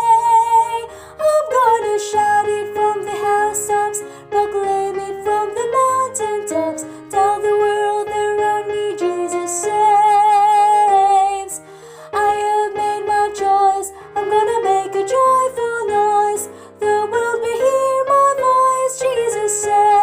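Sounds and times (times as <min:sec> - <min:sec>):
woman singing: 0:00.0 - 0:20.0.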